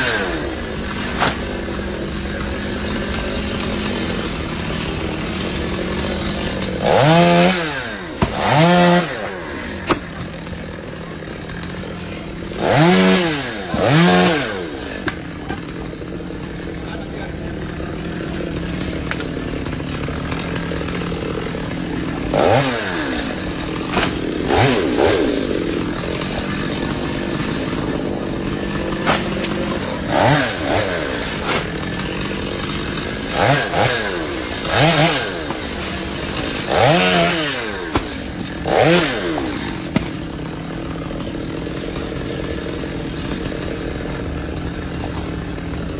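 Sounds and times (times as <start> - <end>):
chainsaw idling and revving: 0.0 - 45.9.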